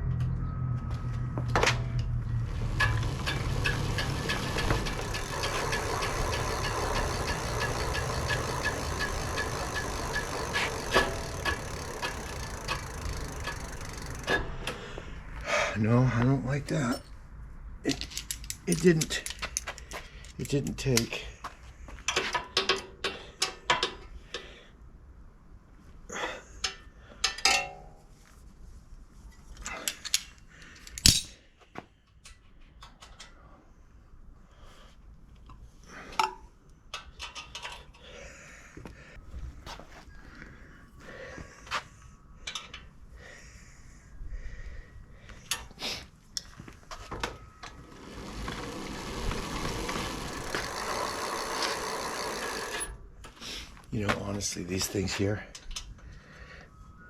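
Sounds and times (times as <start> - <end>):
bicycle wheel and chain whirring: 1.9 - 15.0, 46.4 - 53.1.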